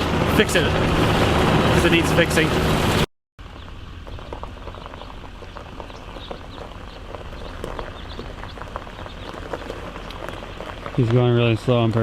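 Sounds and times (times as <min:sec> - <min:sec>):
heavy machine engine running: 0:00.0 - 0:05.9
small clicks and crackles: 0:04.0 - 0:12.0.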